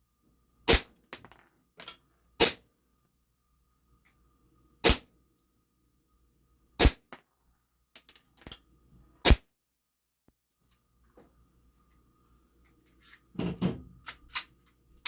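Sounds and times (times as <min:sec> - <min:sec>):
airsoft pistol shots: 0:02.4 - 0:02.6, 0:04.8 - 0:05.0, 0:06.8 - 0:07.0.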